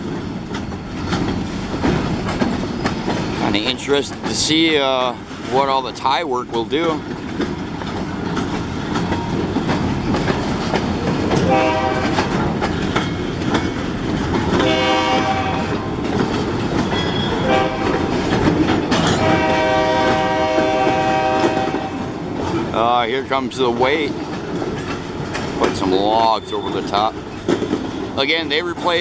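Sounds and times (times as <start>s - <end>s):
diesel locomotive rumble: 0.0s - 29.0s
locomotive air horn blasts: 11.4s - 12.4s, 14.5s - 15.9s, 17.3s - 18.2s, 19.2s - 22.2s.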